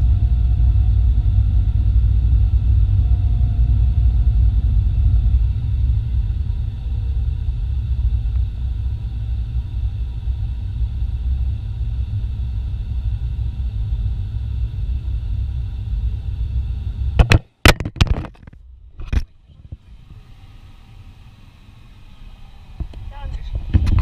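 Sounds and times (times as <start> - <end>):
farm machine engine rumbling: 0.0 - 20.8
sharp clicks and knocks: 17.2 - 19.8.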